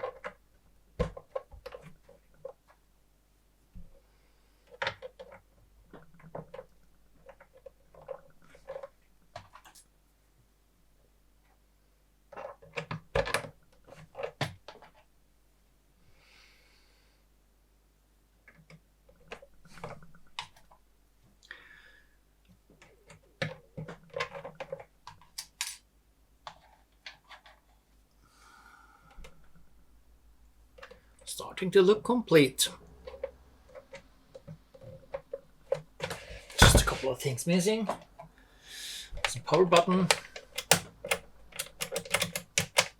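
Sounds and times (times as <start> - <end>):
clicks and knocks of parts: 4.7 - 9.9, 12.3 - 15.1, 22.5 - 27.8, 32.9 - 37.1, 39.1 - 42.9.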